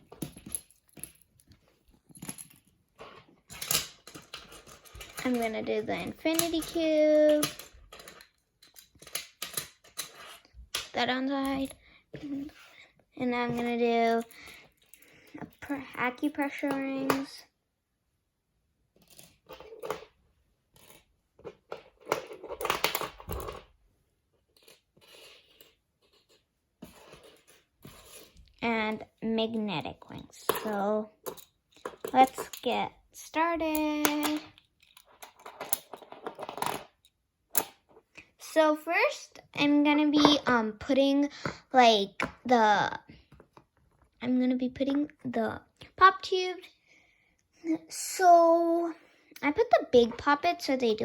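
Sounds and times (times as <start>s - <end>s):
plastic toys rustling and clicking: 0.0s - 17.4s, 19.0s - 23.8s, 24.4s - 29.1s, 29.7s - 38.7s.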